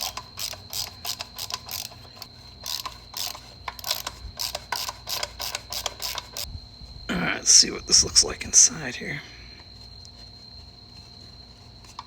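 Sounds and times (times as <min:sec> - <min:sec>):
mechanical clicking and rattling: 0:00.0 - 0:06.5.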